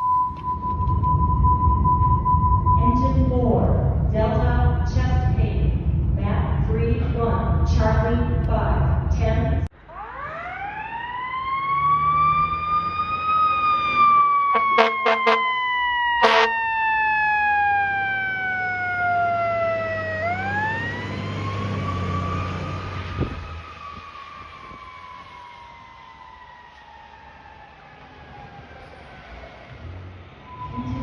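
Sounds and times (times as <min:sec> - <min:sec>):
truck engine rumble: 0:00.0 - 0:31.0
fire engine siren wailing: 0:09.8 - 0:31.0
air horn blasts: 0:14.5 - 0:15.6, 0:16.2 - 0:16.6.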